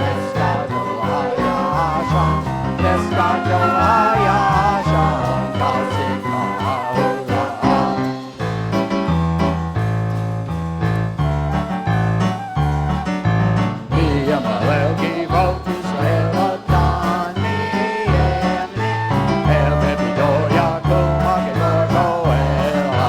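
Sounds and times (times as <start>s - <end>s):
voices singing worship music: 0.0s - 8.5s, 13.8s - 23.0s
band with moving bass line: 0.0s - 23.0s.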